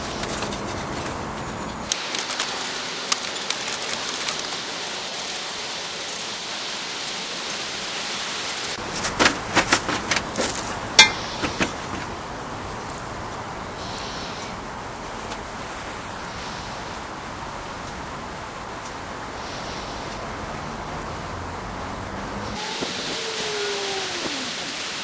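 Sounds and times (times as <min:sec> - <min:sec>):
steady hiss: 0:01.9 - 0:21.3, 0:22.4 - 0:25.0
metal tools clinking: 0:11.0 - 0:11.4.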